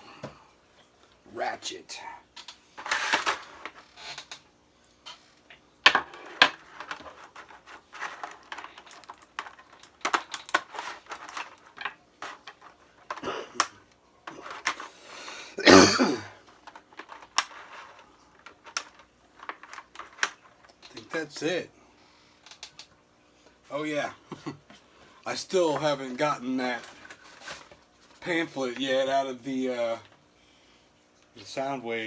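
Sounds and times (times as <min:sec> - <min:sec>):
plastic crackling: 0:06.6 - 0:13.7, 0:25.6 - 0:28.9.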